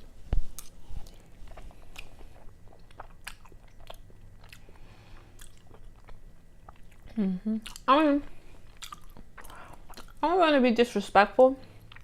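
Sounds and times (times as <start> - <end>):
wet chewing mouth clicks: 8.7 - 10.2.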